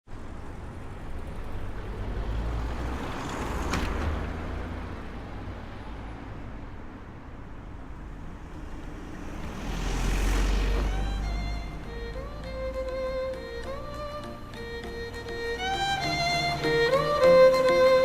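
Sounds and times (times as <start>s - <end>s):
road traffic rumble: 0.0s - 18.0s
vehicles passing by: 0.1s - 18.0s.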